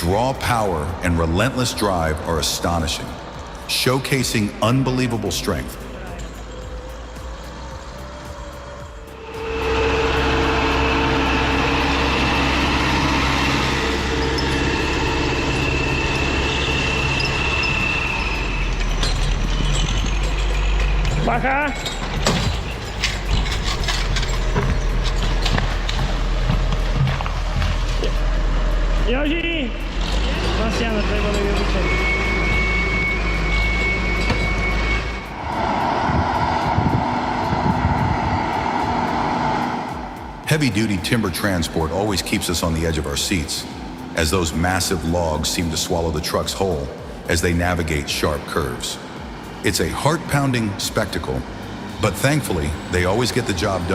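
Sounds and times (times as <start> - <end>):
diesel engine running under load: 0.0 - 53.9
thin high whine: 3.2 - 20.6.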